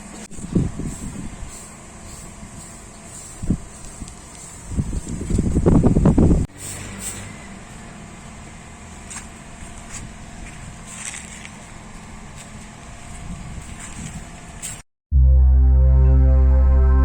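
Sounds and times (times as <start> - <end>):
loud sound cut off: 15.1 - 17.0.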